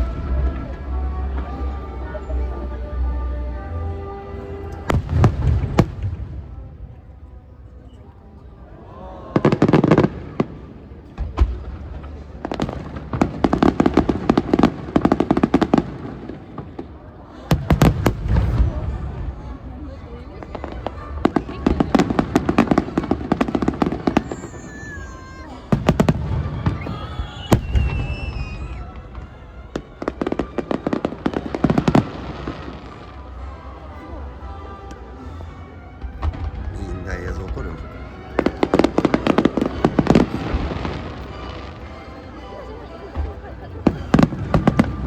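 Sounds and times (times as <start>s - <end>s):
fireworks crackling: 0.0s - 2.3s, 4.7s - 6.6s, 9.4s - 34.0s, 34.9s - 45.0s
fireworks deep boom: 4.9s - 6.8s, 9.4s - 16.9s, 17.5s - 19.6s, 25.6s - 33.0s, 36.0s - 42.0s
low rumble of explosions: 4.9s - 7.4s, 9.4s - 24.4s, 25.2s - 33.0s.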